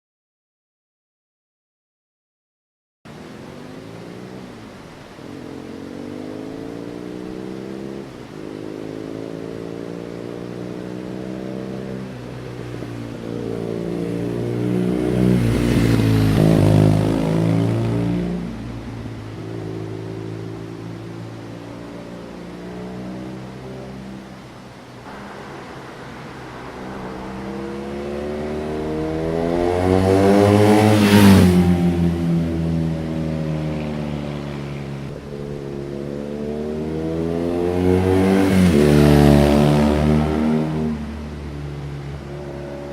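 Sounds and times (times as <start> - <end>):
motorcycle accelerating and shifting: 3.1 - 42.9.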